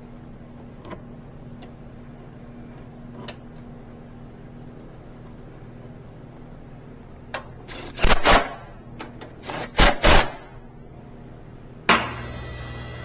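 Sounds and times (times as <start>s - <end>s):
parts scraping against each other: 7.7s - 8.6s.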